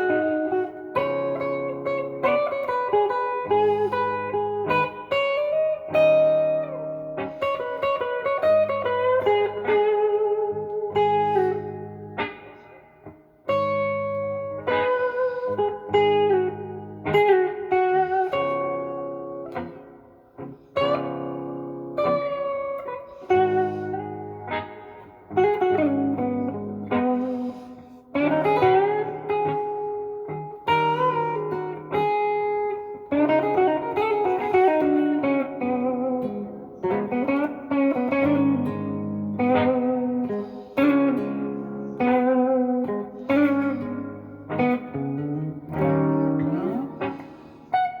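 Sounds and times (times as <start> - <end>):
electric guitar blues lead: 0.0 - 48.0.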